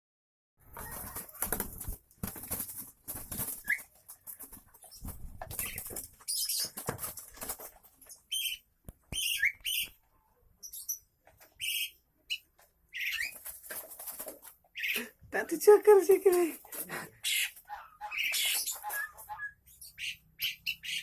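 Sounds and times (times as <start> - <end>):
birds flapping wings: 0.6 - 8.0, 13.2 - 14.6.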